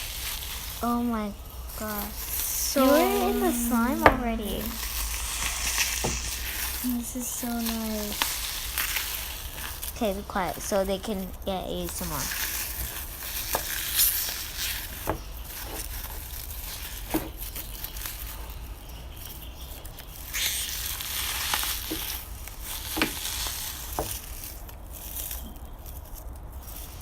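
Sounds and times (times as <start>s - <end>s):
slime crackling: 0.1s - 18.4s.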